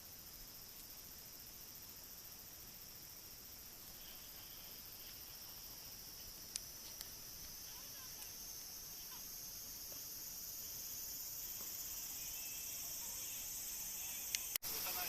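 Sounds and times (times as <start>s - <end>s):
high-pitched insect chorus: 0.0s - 15.0s
faint clicks: 14.3s - 14.6s.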